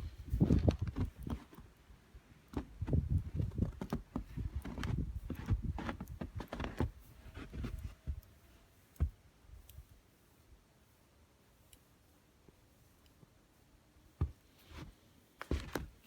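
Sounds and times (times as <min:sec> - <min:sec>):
footsteps crunching through snow: 0:02.5 - 0:08.2, 0:14.2 - 0:16.0.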